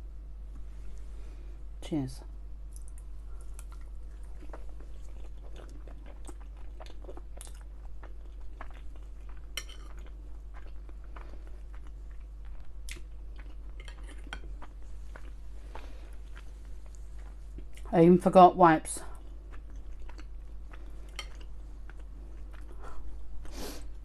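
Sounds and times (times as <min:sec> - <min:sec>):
food crunching: 0:02.7 - 0:17.9, 0:19.1 - 0:23.6
person chewing food: 0:02.7 - 0:17.9, 0:19.1 - 0:24.0.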